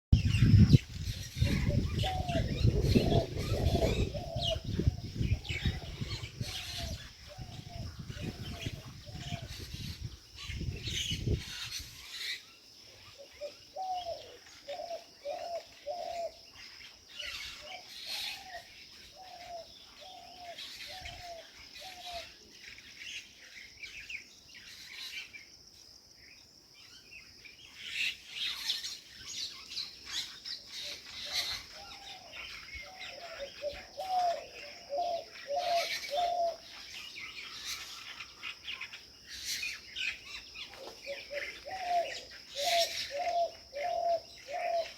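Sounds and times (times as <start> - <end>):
birds chirping: 0.1 - 44.9
bird repeating low arched call: 31.2 - 36.8, 40.9 - 44.9.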